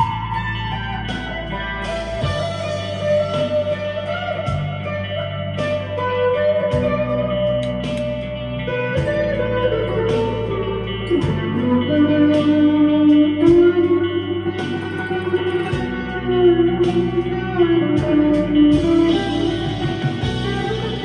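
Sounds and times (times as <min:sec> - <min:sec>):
electric guitar slow lead line: 0:00.0 - 0:21.0.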